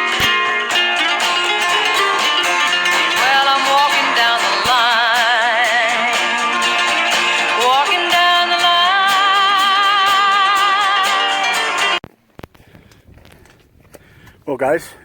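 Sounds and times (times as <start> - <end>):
person singing: 0.0 - 12.0
strummed acoustic guitar: 0.0 - 12.0.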